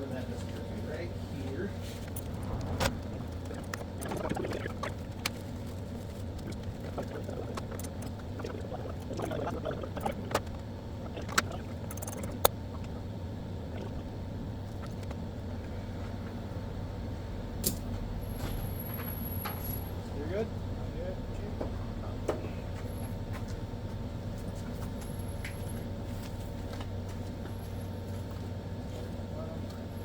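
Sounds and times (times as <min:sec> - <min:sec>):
steady low hum: 0:00.0 - 0:18.2.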